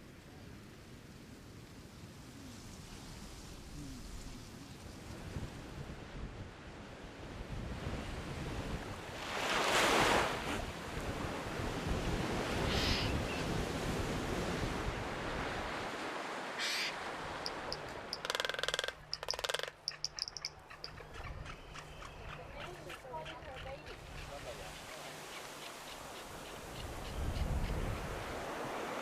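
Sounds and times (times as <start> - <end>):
surf washing on shore: 0.0 - 18.3, 24.0 - 29.0
bird chirps and calls: 17.5 - 27.8.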